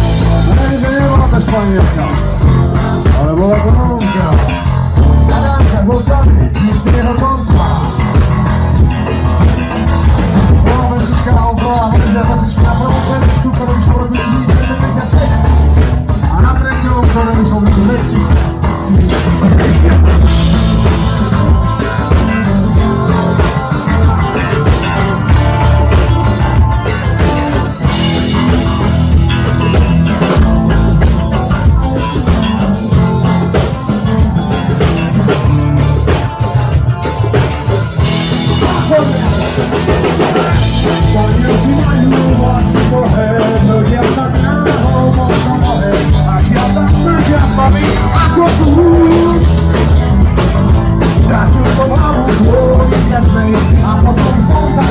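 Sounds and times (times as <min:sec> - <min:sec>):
drums: 0:00.0 - 0:54.9
electric guitar: 0:00.0 - 0:54.9
person singing: 0:00.0 - 0:54.9.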